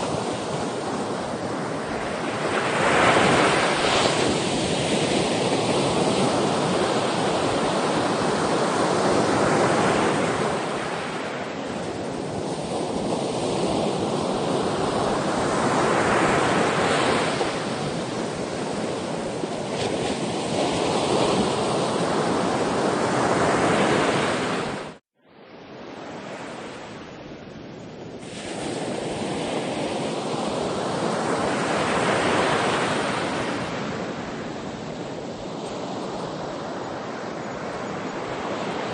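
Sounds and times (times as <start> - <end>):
waves breaking on shore: 0.0 - 25.0, 28.1 - 38.9
wind: 0.0 - 38.9.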